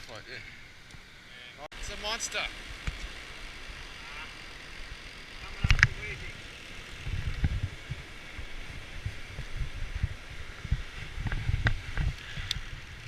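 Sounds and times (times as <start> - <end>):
wind buffeting microphone: 5.3 - 13.0.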